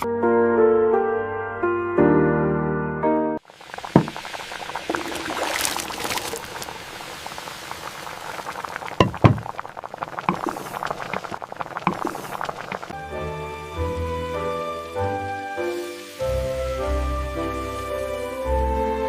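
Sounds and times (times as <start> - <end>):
liquid bubbling in a pot: 3.4 - 13.0
dull knocks: 4.0 - 4.2, 9.0 - 9.5.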